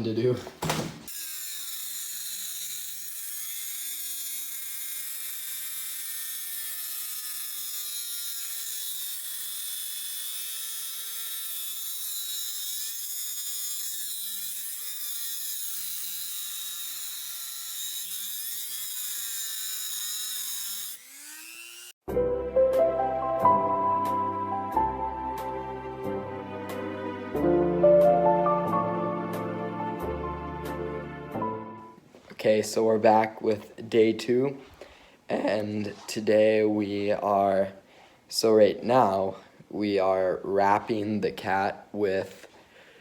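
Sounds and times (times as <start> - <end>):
power tool motor whining: 1.1 - 22.0.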